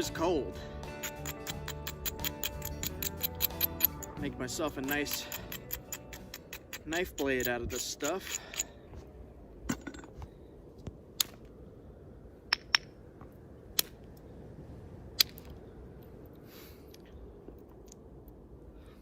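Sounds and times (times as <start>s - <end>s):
knapping tool striking stone: 1.0s - 8.7s.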